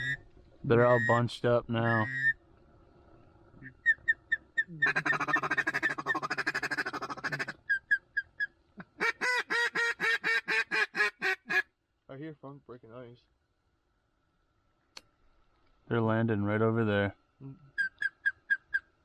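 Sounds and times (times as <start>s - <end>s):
duck call chattering feed call: 0.0s - 0.2s, 0.8s - 1.2s, 1.8s - 2.4s, 3.6s - 11.6s, 17.7s - 18.9s
duck call clucks: 0.0s - 0.2s, 0.8s - 1.2s, 1.8s - 2.4s, 3.6s - 11.7s, 17.7s - 18.9s
duck call quacks: 1.8s - 2.4s, 3.6s - 8.0s, 8.8s - 11.7s.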